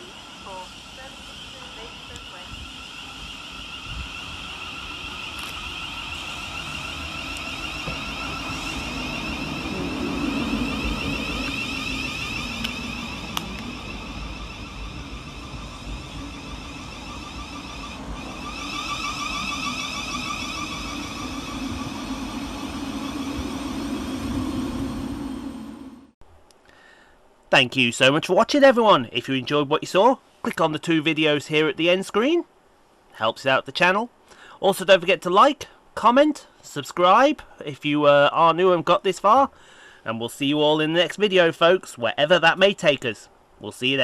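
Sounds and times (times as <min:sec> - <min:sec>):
train high-pitched whine: 0:00.0 - 0:26.2
wheels rumbling on rail: 0:00.0 - 0:26.2.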